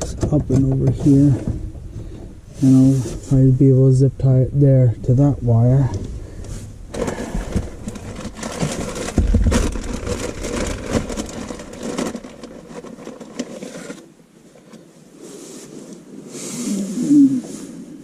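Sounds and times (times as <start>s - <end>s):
wiring rustling: 5.8s - 14.8s.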